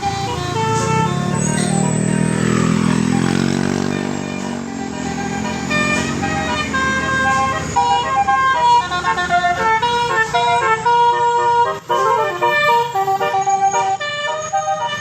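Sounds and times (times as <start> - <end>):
bus engine: 0.0 - 15.0
musical bus air horn playing a tune: 0.0 - 15.0.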